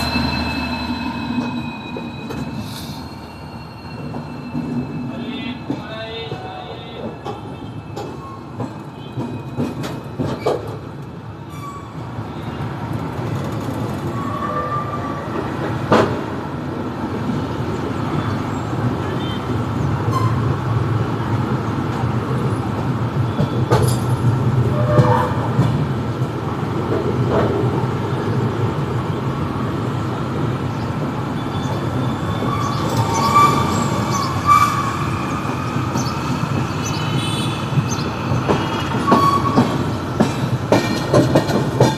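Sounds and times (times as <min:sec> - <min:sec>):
train wheels squealing: 0:00.0 - 0:10.8, 0:11.4 - 0:12.7, 0:31.3 - 0:39.9
train rumbling on track: 0:00.0 - 0:41.9.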